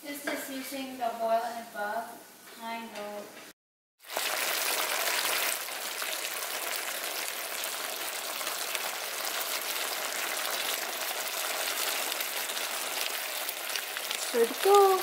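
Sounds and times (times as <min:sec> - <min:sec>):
food sizzling in a frying pan: 0:04.0 - 0:15.0.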